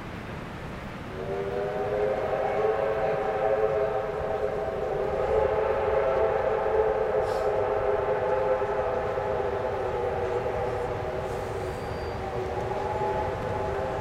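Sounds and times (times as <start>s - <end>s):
low rumble of train: 0.0s - 14.0s
steam locomotive whistle: 1.1s - 14.0s.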